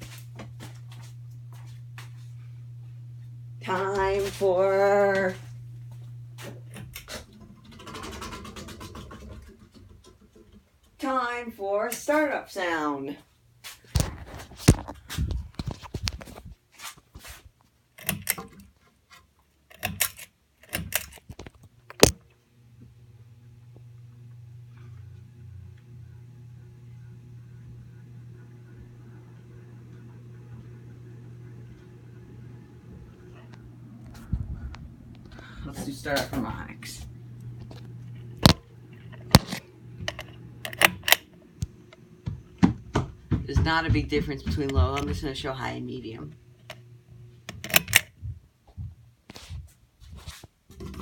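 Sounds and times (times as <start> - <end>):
fan motor humming: 0.0 - 16.6, 17.2 - 18.9, 19.7 - 49.1, 50.7 - 51.0
person speaking: 3.6 - 5.5, 35.3 - 37.2, 43.3 - 46.4.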